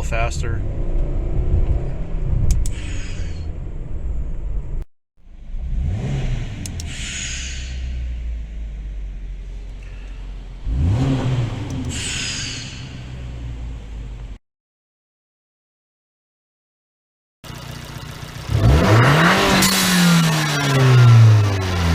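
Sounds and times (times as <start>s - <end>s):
car engine accelerating: 3.6s - 14.4s, 17.5s - 21.9s.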